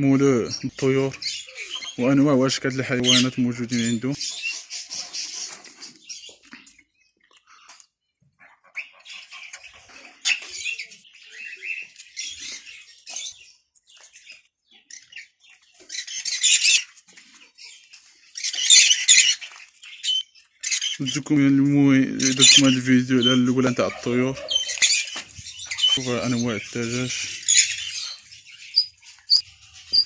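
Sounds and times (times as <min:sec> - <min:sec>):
caged birds chirping and squawking: 0:00.0 - 0:30.0.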